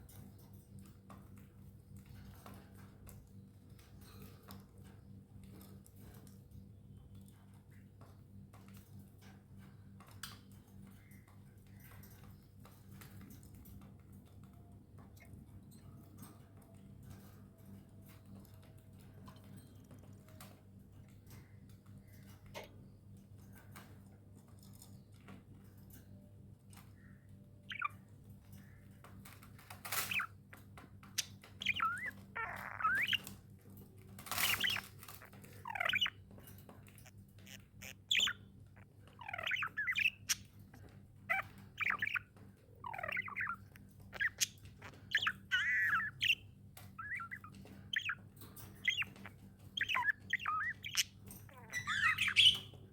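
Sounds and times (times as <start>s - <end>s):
budgerigars chirping and chattering: 27.6s - 52.9s
budgerigar squawks: 31.6s - 33.2s, 34.3s - 34.9s, 35.7s - 36.1s, 37.5s - 38.4s, 39.2s - 40.4s, 41.3s - 46.4s, 47.0s - 48.2s, 48.8s - 49.2s, 49.8s - 52.7s.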